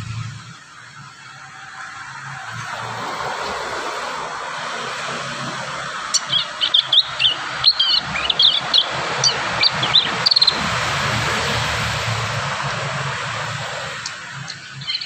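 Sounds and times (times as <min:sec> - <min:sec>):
young birds chirping and trilling: 0:05.6 - 0:11.6, 0:12.4 - 0:15.0.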